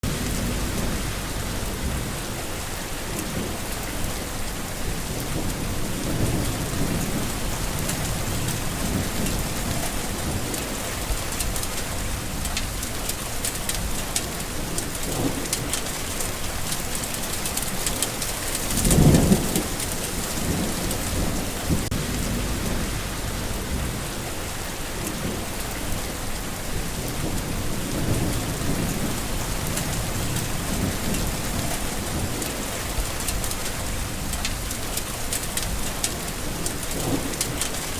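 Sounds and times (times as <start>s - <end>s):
low rumble: 0.0s - 2.4s, 20.5s - 24.3s
heavy rain on foliage: 0.0s - 37.9s.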